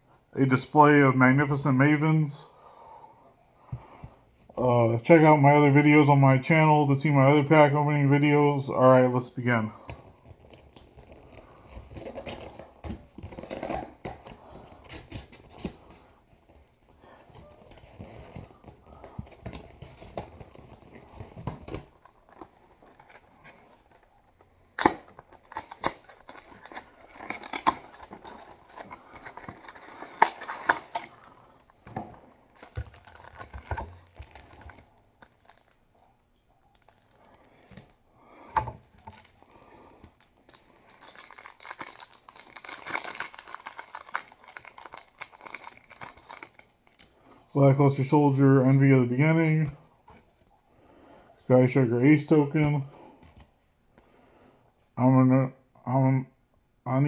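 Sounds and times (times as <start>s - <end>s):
plastic and foil crinkling: 9.9s - 53.6s
packaging ripping: 24.7s - 31.6s, 32.5s - 35.8s, 38.8s - 47.2s.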